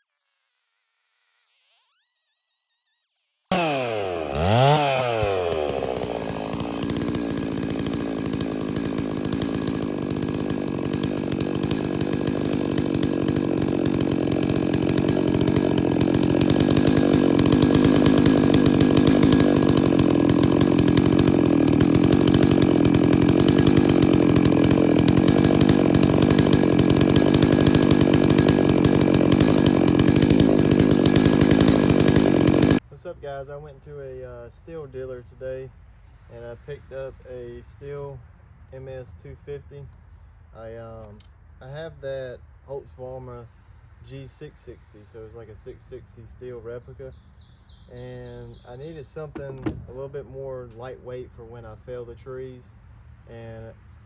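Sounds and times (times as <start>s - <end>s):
chainsaw cutting log: 1.5s - 32.8s, 47.4s - 51.7s.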